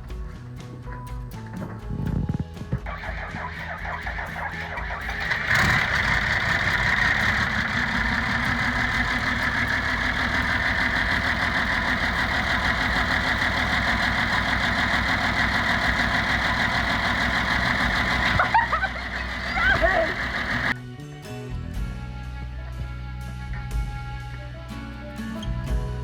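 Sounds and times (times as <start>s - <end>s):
diesel engine running: 1.7s - 20.8s.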